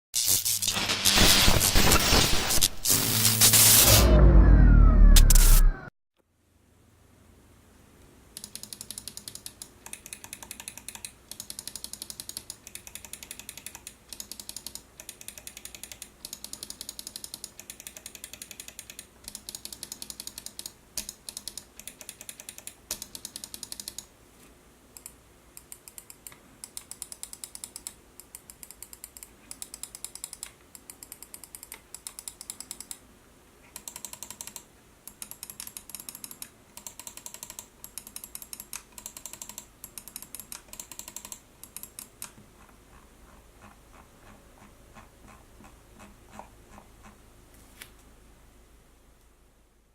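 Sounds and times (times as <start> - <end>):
mouse buttons clicking rapidly: 8.4 - 24.1, 24.9 - 33.0, 33.7 - 47.2.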